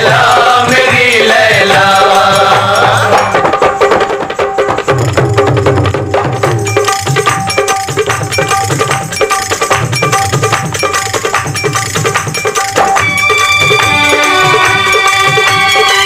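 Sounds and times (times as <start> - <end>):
hand percussion: 0.0 - 16.0
melodic instruments: 6.7 - 16.0.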